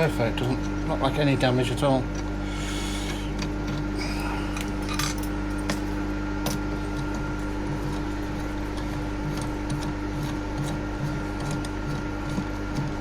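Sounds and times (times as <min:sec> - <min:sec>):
electrical machine hum: 0:00.0 - 0:13.0
metal parts clinking: 0:04.6 - 0:05.8.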